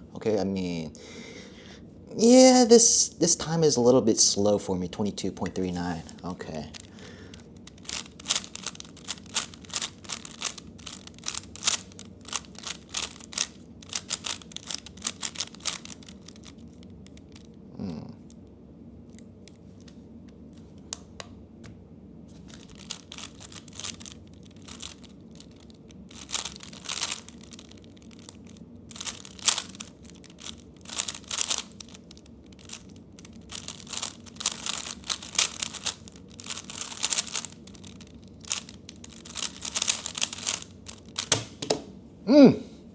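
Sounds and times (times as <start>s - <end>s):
puzzle cube layers clicking: 7.7s - 16.1s.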